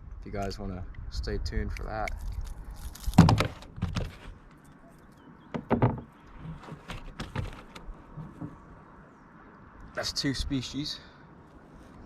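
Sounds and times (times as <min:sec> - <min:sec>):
knocks on a kayak: 0:05.5 - 0:06.1.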